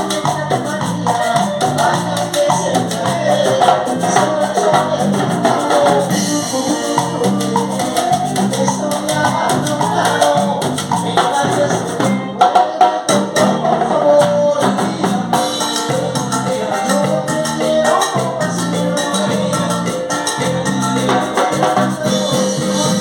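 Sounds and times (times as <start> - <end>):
hand percussion: 0.0 - 23.0
latin music with singing: 0.0 - 23.0.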